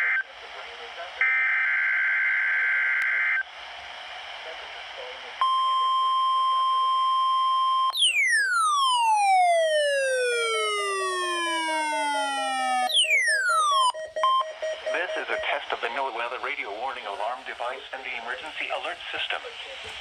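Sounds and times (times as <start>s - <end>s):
radio hiss: 0.0s - 1.3s, 3.1s - 5.4s, 14.5s - 20.0s
alarm tone sweeping down: 7.9s - 16.0s
steady warning tone: 8.1s - 16.6s
pulsing beep: 10.5s - 16.0s
digital header data burst: 12.6s - 16.4s.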